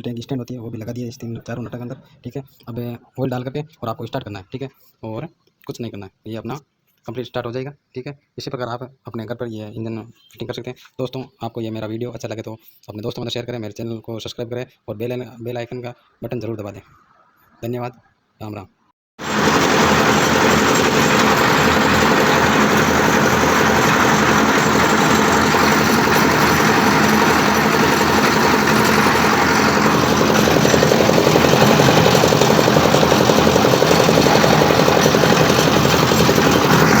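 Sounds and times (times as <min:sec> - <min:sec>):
diesel engine running: 0:19.2 - 0:37.0.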